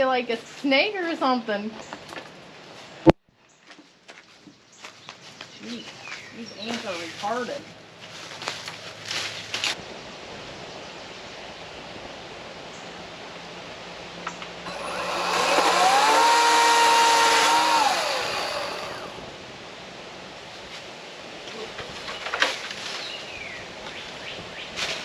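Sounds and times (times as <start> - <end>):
power saw motor: 14.7 - 19.3.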